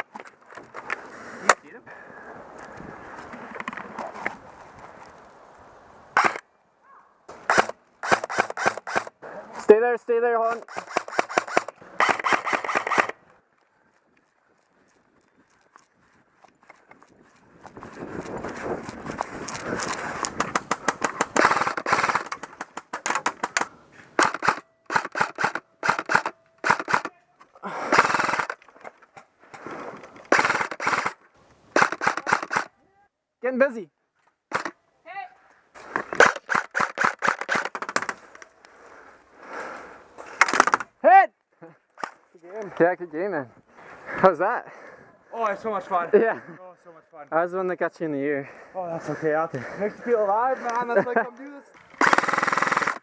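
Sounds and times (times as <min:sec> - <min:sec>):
airsoft gun shots: 0:06.2 - 0:06.4, 0:07.4 - 0:09.1, 0:10.5 - 0:13.2, 0:20.4 - 0:27.1, 0:30.3 - 0:31.2, 0:31.8 - 0:32.7, 0:52.0 - 0:53.0
rustling of movement: 0:10.6 - 0:32.8.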